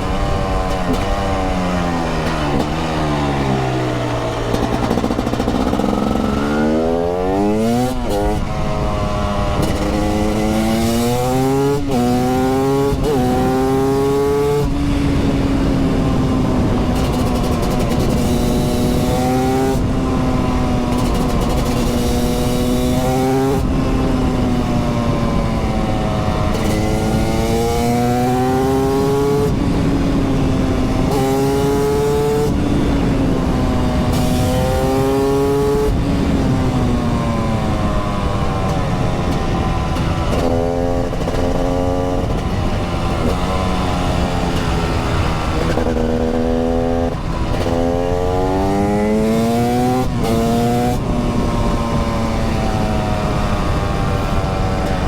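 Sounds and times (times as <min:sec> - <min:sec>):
two-stroke motorcycle engine revving: 0:00.0 - 0:55.0.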